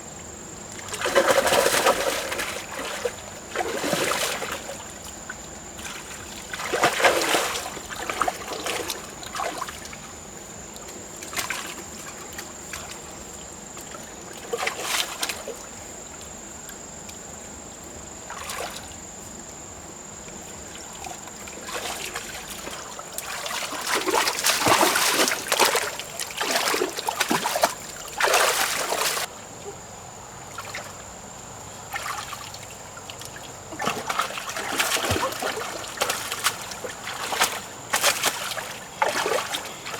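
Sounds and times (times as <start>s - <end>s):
water splashing and sloshing: 0.0s - 39.9s
water trickling: 20.3s - 29.8s, 31.6s - 39.9s.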